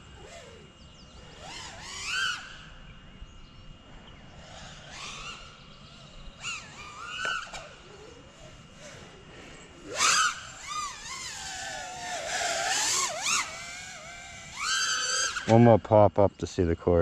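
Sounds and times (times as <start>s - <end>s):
quadcopter motors whining: 0.0s - 17.0s.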